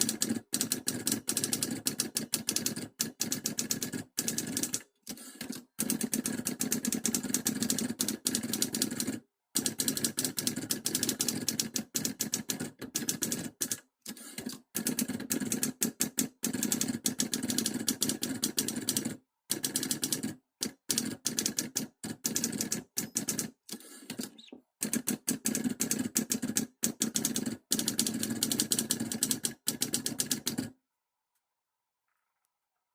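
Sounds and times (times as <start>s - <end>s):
typewriter keystrokes: 14.4s - 23.5s, 24.1s - 30.7s.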